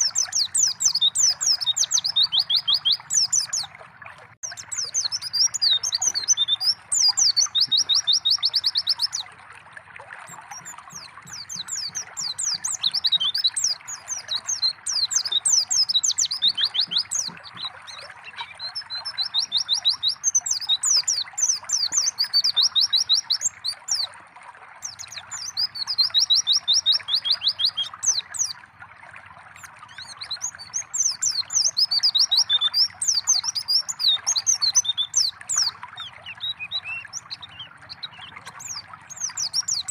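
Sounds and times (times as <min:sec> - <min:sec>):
bird twittering and trills: 0:00.0 - 0:03.8, 0:04.4 - 0:09.4, 0:10.2 - 0:24.1, 0:24.8 - 0:28.7, 0:29.6 - 0:39.9
running water trickling: 0:00.0 - 0:39.9.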